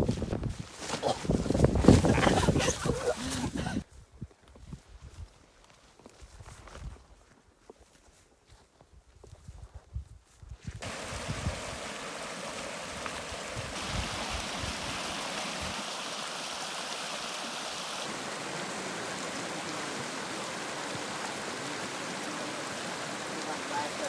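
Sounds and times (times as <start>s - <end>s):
fast-flowing stream rushing: 10.8s - 24.0s.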